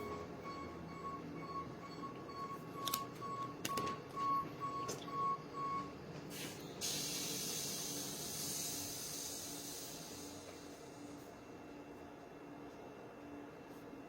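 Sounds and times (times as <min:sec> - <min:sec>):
humidifier mist hiss: 0:06.4 - 0:11.3.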